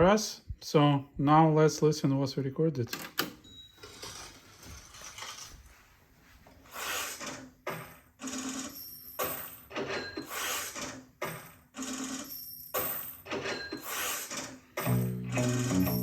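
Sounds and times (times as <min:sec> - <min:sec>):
music from cassette: 0:14.8 - 0:16.0.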